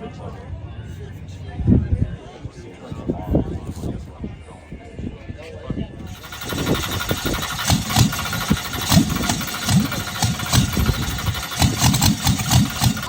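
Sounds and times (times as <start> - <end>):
drag car engine running roughly: 6.1 - 13.0.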